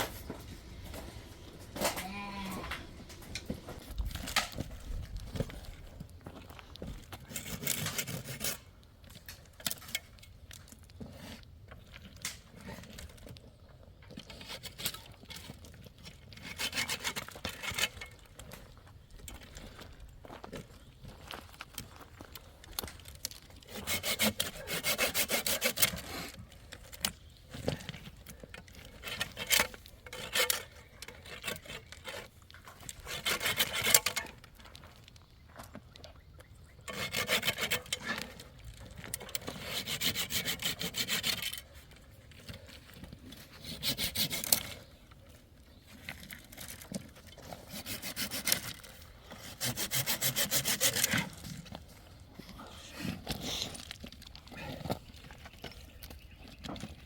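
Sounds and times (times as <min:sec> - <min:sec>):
saw cutting wood: 0:16.4 - 0:18.0, 0:23.7 - 0:26.3, 0:29.1 - 0:32.3, 0:33.0 - 0:34.3, 0:36.9 - 0:38.3, 0:39.4 - 0:41.6, 0:43.5 - 0:44.8, 0:47.6 - 0:48.8, 0:49.4 - 0:51.3.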